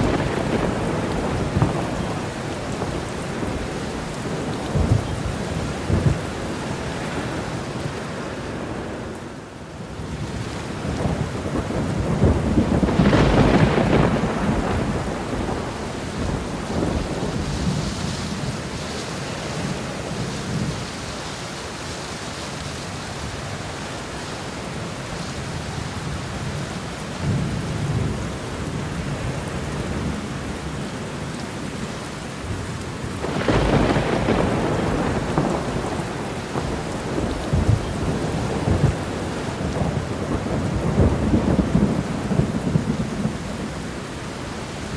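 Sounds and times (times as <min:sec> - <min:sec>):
thunder rumbling: 0:00.0 - 0:09.2, 0:09.8 - 0:21.2, 0:32.4 - 0:44.9
heavy rain: 0:00.0 - 0:44.9.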